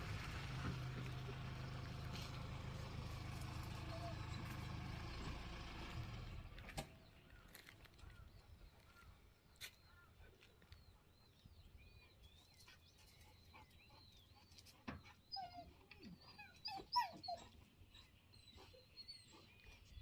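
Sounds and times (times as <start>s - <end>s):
dog whimpering and whining: 15.0s - 20.0s.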